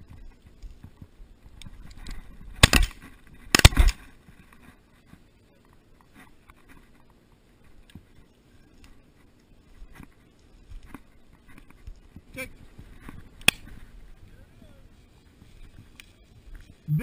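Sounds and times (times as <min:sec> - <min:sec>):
shotgun shots: 0:02.6 - 0:04.0.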